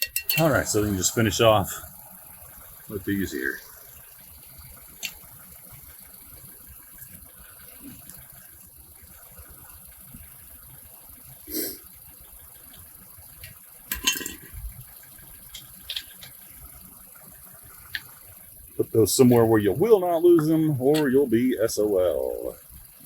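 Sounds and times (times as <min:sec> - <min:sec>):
metal clink: 0:00.0 - 0:00.5, 0:13.9 - 0:14.6
steady hiss: 0:00.2 - 0:23.0
small ticks: 0:03.6 - 0:10.4, 0:12.2 - 0:13.9, 0:14.6 - 0:18.5.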